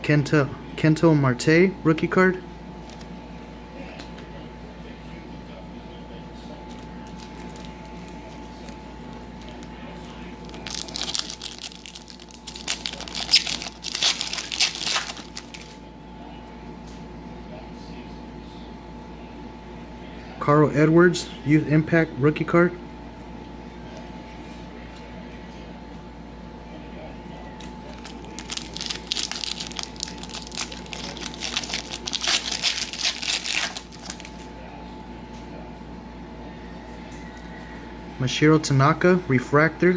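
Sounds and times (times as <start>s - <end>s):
foil wrapper tearing and crinkling: 6.7s - 15.8s, 27.6s - 34.5s.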